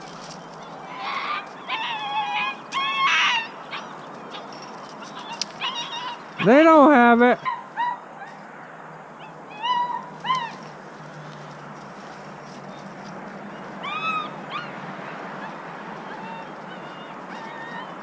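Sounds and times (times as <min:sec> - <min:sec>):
high-pitched animal cries: 0:00.9 - 0:04.5, 0:05.2 - 0:06.6, 0:09.2 - 0:10.6, 0:13.8 - 0:14.8, 0:15.4 - 0:18.0.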